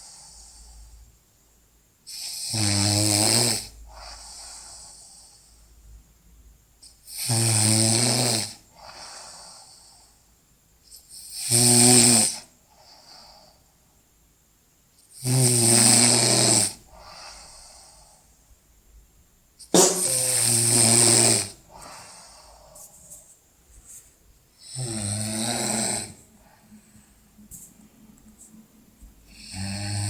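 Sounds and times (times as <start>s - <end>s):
person snoring loudly: 24.6s - 26.2s, 29.3s - 30.0s
soft breathing: 26.1s - 29.5s.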